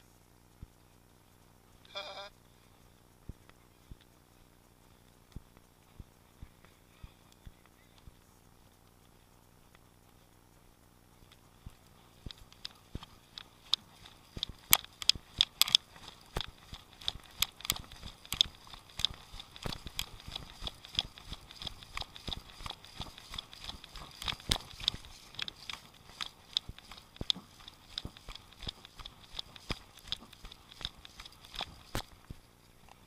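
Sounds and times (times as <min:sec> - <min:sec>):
footsteps on dry ground: 0:11.3 - 0:32.4.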